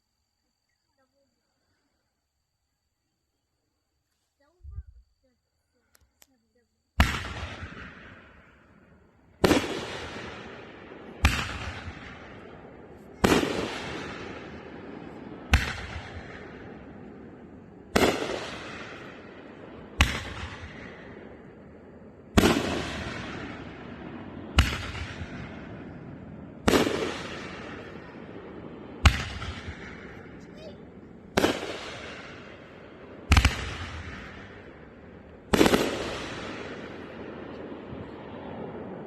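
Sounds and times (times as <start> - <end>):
firework bangs with rumble: 9.4 - 21.6, 22.3 - 34.7, 35.3 - 39.0.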